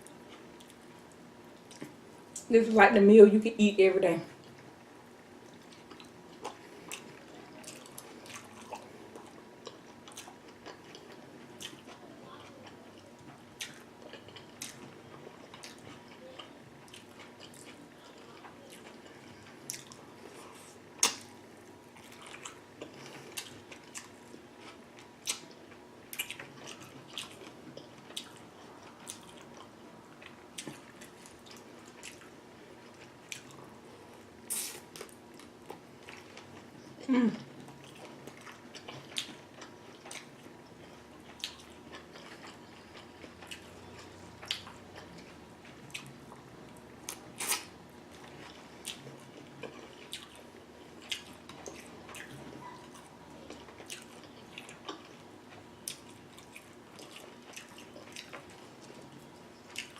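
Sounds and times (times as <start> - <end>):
wet chewing and sucking: 34.5 - 36.5, 47.1 - 55.2.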